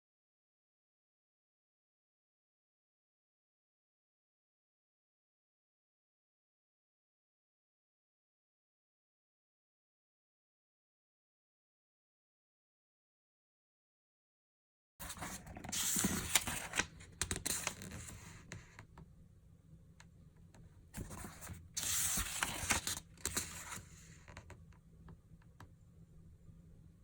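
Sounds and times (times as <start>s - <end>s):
packaging rustling and scraping: 15.0s - 18.6s.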